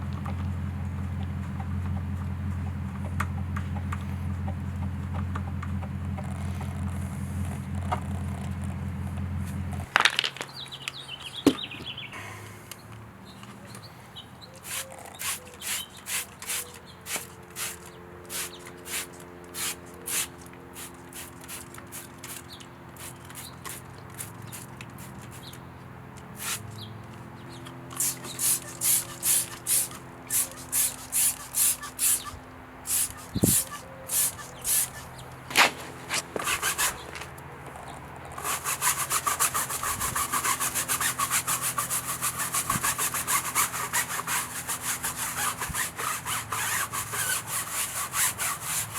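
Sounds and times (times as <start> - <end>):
stiff brush scrubbing: 5.2 - 9.9, 14.6 - 25.6, 26.2 - 26.9, 27.6 - 48.9.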